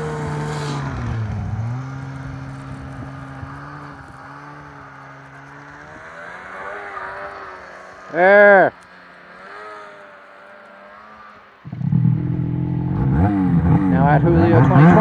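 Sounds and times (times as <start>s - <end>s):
snowmobile engine running: 0.0s - 15.0s.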